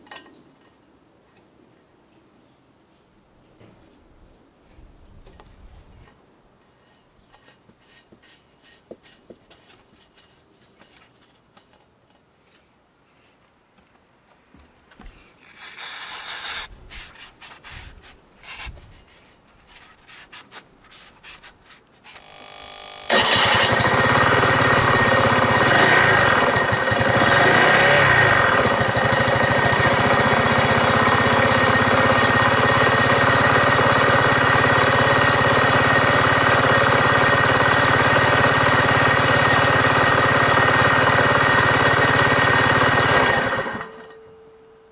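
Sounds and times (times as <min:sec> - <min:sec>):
short rustle: 0:15.0 - 0:22.2
scooter engine starting and running: 0:22.1 - 0:44.2.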